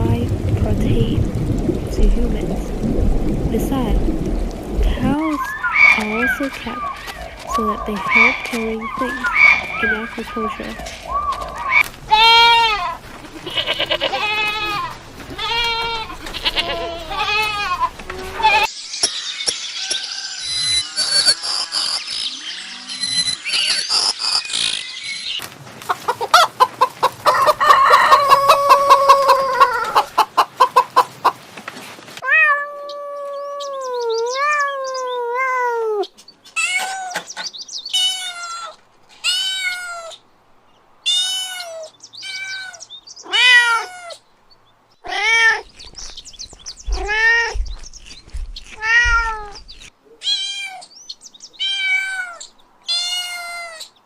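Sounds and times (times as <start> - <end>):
cat meowing: 32.2 - 36.0, 38.0 - 40.2, 41.1 - 44.2, 45.0 - 45.7, 46.9 - 47.6, 48.8 - 49.6, 50.2 - 50.9, 51.6 - 53.9.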